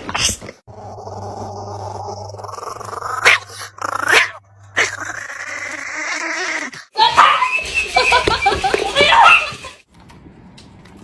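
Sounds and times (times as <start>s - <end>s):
dog growling low: 0.7s - 6.9s
dog yipping: 7.0s - 8.4s, 9.0s - 9.6s.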